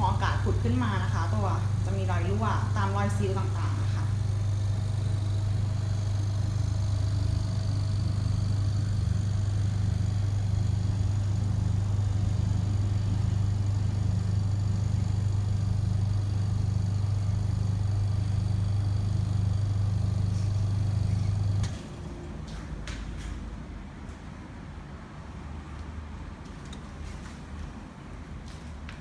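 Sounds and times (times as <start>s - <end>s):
vacuum pump motor hum: 0.0s - 24.6s.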